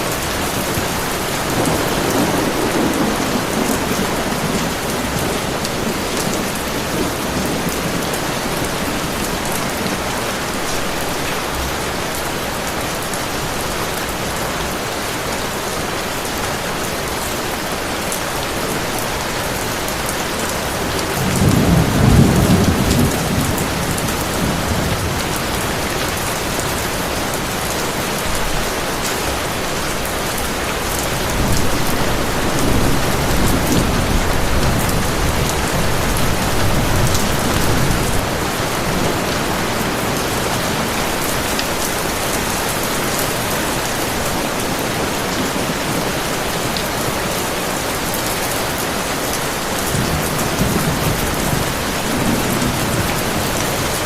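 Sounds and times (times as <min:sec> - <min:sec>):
heavy rain: 0:00.0 - 0:54.0
thunder rumbling: 0:00.1 - 0:10.7, 0:20.5 - 0:28.8, 0:30.2 - 0:47.9.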